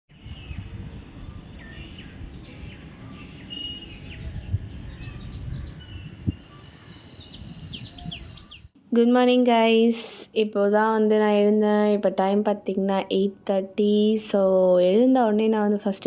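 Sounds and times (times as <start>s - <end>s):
small birds chirping: 0.1s - 8.8s
low rumble: 0.2s - 8.7s.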